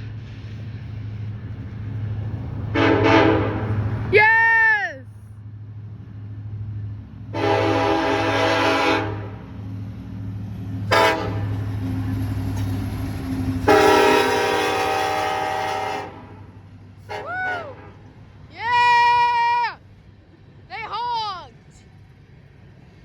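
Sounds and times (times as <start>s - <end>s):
low rumble of train: 0.0s - 23.0s
locomotive air horn: 2.7s - 3.8s, 7.3s - 9.5s, 10.9s - 11.6s, 13.6s - 18.1s.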